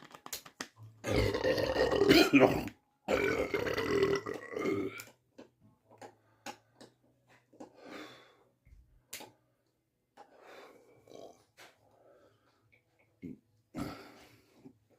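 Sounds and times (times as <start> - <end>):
faint breaths: 6.1 - 8.8, 10.2 - 12.9.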